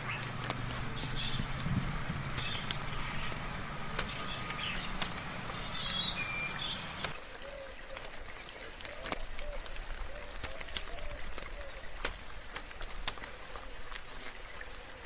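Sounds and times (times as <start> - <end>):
birds chirping and whistling: 0.0 - 7.2
low steady hum: 0.0 - 7.2
rain hiss: 0.0 - 15.0.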